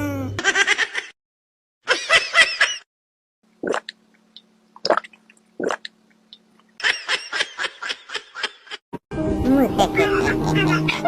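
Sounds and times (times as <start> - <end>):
drip-like plops: 3.6 - 6.4.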